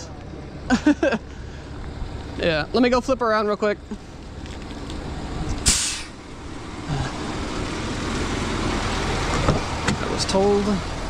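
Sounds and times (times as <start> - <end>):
truck engine running: 0.0 - 11.0
loud hiss: 5.6 - 6.2.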